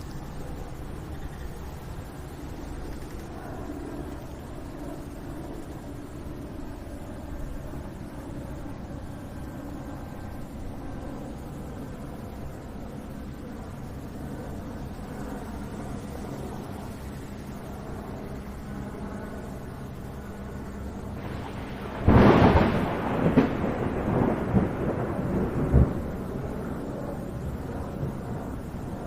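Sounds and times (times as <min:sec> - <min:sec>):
steady rain: 0:00.0 - 0:29.0
thunder clap rumbling: 0:21.1 - 0:29.0.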